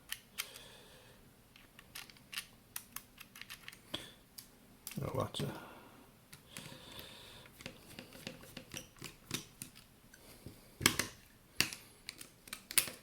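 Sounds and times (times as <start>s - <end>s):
plastic parts clicking and snapping: 1.5s - 3.8s, 10.8s - 13.0s.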